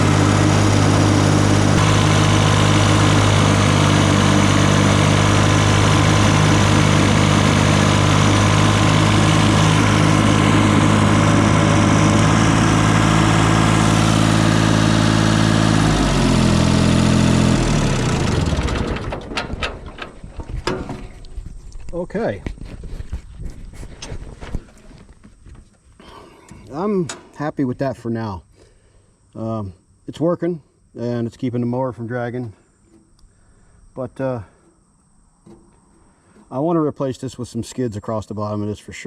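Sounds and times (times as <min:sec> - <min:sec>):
tractor engine running: 0:00.0 - 0:22.2.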